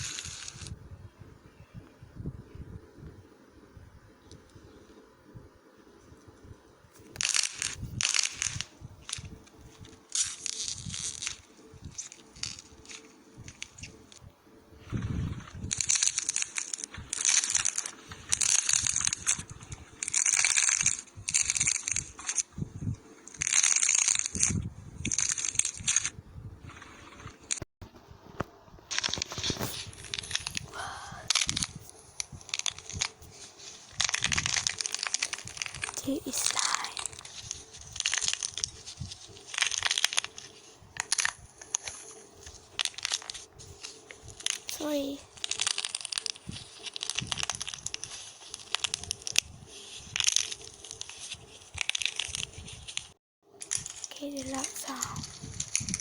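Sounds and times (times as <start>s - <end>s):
crunching crackling bursts: 0.0s - 0.8s, 5.9s - 56.0s.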